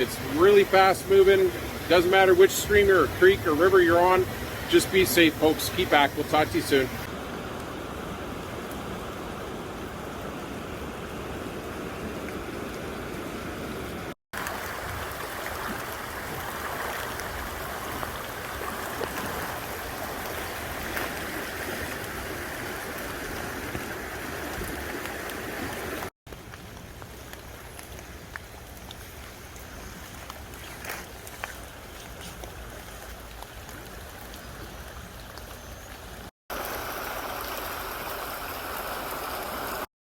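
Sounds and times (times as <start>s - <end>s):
river water rushing: 0.0s - 26.1s, 36.5s - 39.9s.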